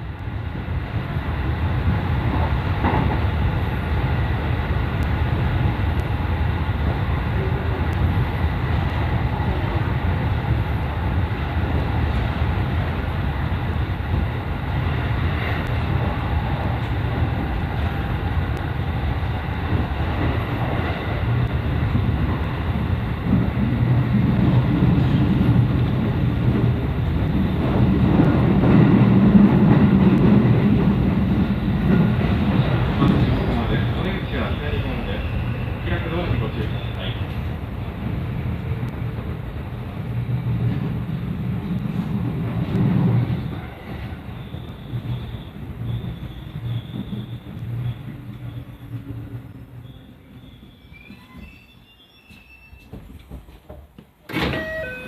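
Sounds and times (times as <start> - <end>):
train rumbling: 0.0 - 55.0.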